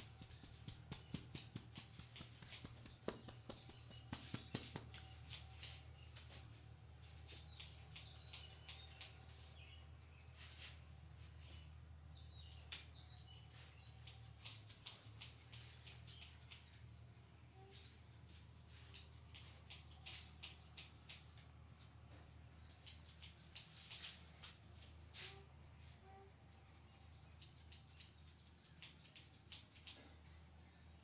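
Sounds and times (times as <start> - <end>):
light taps on scalp: 0.0 - 5.5.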